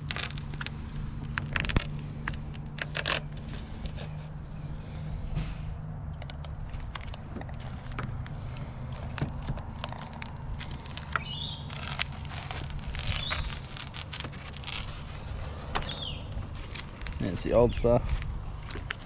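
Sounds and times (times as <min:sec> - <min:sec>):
rubber strip tearing off: 0:00.0 - 0:04.3, 0:06.2 - 0:17.2
short squeaks: 0:06.2 - 0:16.8.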